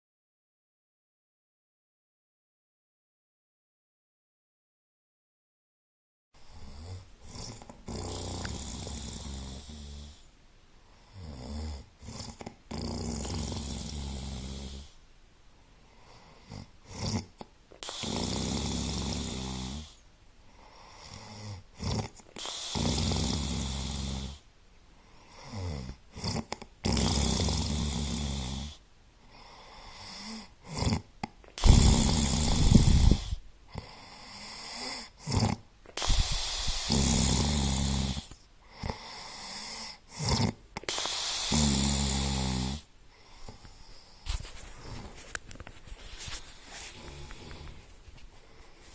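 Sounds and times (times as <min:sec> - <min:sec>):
animal snore-like breathing: 0:06.4 - 0:10.3, 0:11.0 - 0:15.0, 0:16.0 - 0:20.0, 0:20.6 - 0:24.5, 0:25.2 - 0:45.2, 0:46.2 - 0:48.9.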